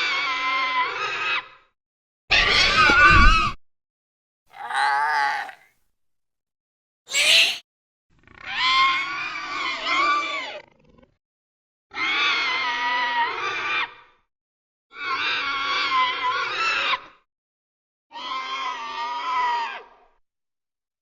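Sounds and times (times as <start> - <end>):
creature screeching calls: 4.5 - 5.6, 7.1 - 7.6.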